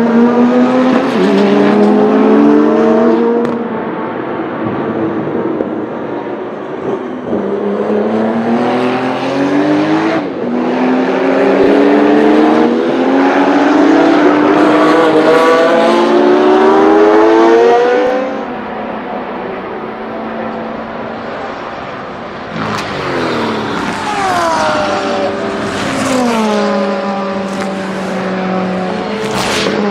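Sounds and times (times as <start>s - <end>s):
race car accelerating through gears: 0.0s - 3.8s, 6.8s - 18.6s, 22.3s - 29.9s.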